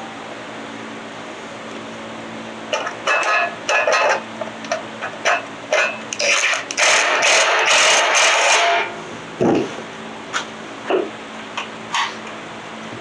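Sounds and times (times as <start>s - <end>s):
power tool running in bolts: 2.7s - 9.0s.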